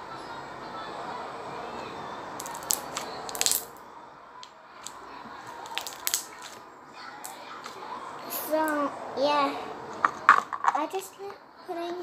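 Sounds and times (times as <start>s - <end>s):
slime squeezed crackling pops: 2.4s - 3.6s, 5.6s - 6.5s.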